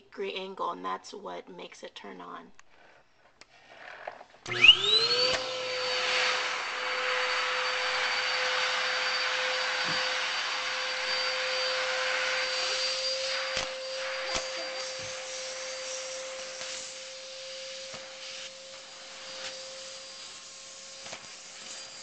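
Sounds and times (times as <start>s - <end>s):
vacuum cleaner motor whining: 3.7s - 22.0s
hiss of suction air: 9.7s - 22.0s.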